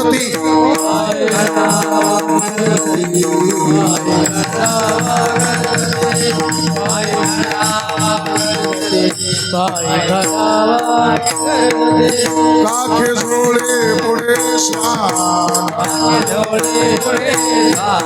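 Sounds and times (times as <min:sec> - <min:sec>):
hand cymbals jingling: 0:00.8 - 0:10.7.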